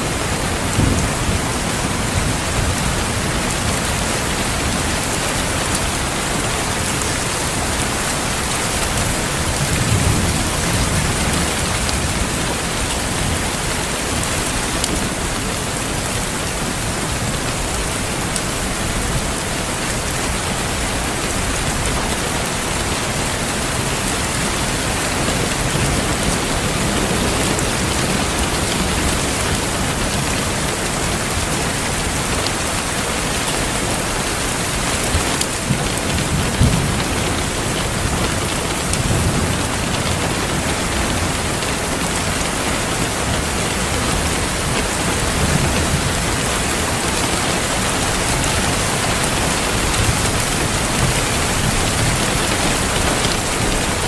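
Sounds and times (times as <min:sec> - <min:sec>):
heavy rain pouring: 0:00.0 - 0:54.0
low rumble of thunder: 0:00.2 - 0:05.1, 0:07.7 - 0:13.8.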